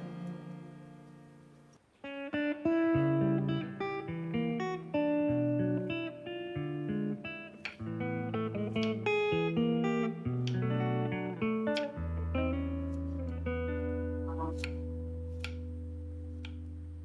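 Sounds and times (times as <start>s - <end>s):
bass notes: 0.0s - 1.6s, 9.5s - 17.0s
plucked guitar melody: 0.0s - 17.0s.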